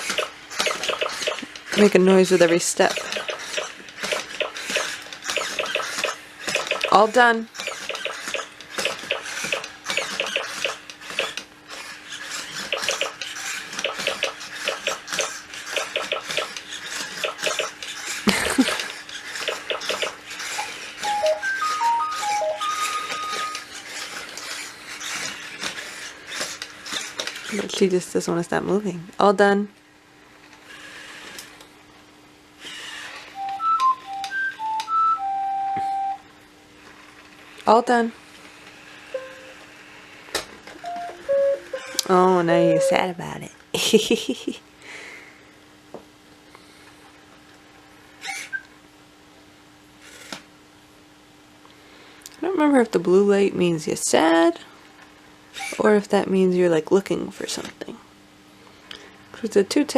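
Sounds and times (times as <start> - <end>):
robot dog clicks and taps: 0.0 - 11.4, 12.6 - 17.8, 19.4 - 20.7
robot dog electronic beeps: 0.2 - 7.1, 19.7 - 23.6, 39.2 - 39.6, 40.9 - 43.1
faint steady hum: 33.2 - 50.0.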